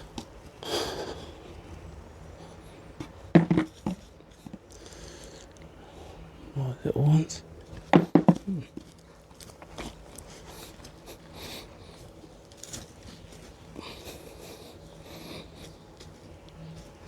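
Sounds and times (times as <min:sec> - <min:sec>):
small knocks: 0:03.0 - 0:04.6, 0:07.8 - 0:08.9
soil scraping rustles: 0:07.7 - 0:17.0.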